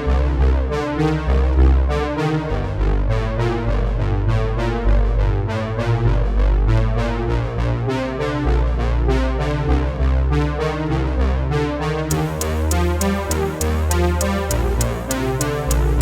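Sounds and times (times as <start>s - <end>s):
instrumental rap beat: 12.1s - 16.0s.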